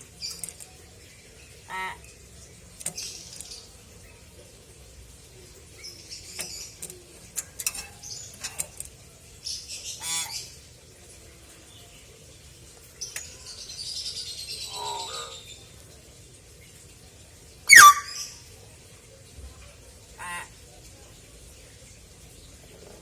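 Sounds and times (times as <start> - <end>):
myna bird calling: 17.7 - 18.4.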